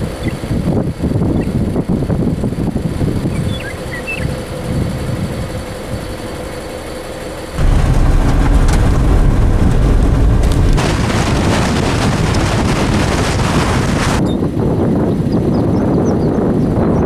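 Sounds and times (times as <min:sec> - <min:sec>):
rain: 0:07.5 - 0:14.2
wind buffeting microphone: 0:07.6 - 0:17.0.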